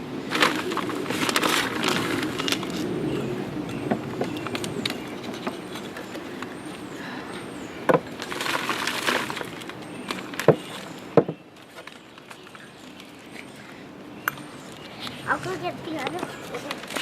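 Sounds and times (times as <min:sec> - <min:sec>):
birds chirping: 0:00.0 - 0:17.0
rustling scrape: 0:00.3 - 0:02.9
flower pots knocking: 0:10.1 - 0:11.4.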